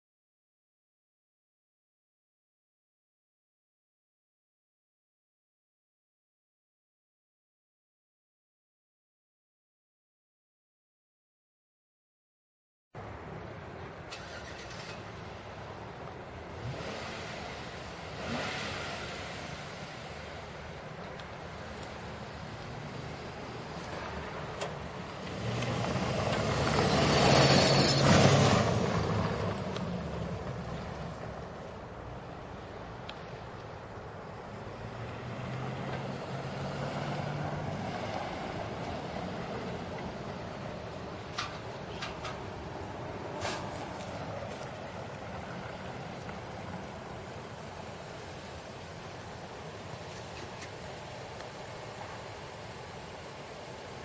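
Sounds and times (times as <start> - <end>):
motor vehicle rumble: 13.0 - 54.0.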